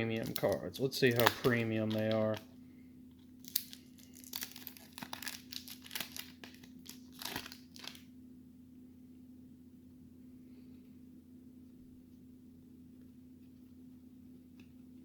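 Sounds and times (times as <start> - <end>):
card pack wrapper tearing and crinkling: 0.1 - 2.4, 3.4 - 8.1.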